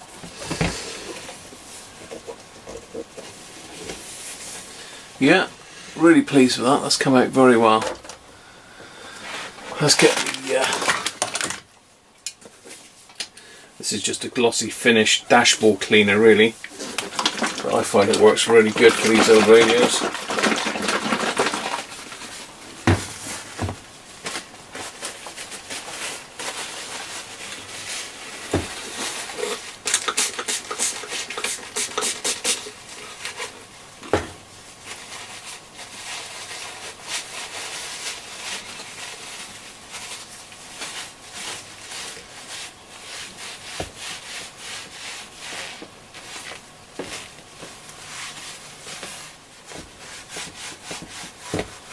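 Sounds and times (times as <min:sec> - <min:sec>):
cloth wiping plastic case: 0:16.2 - 0:21.4.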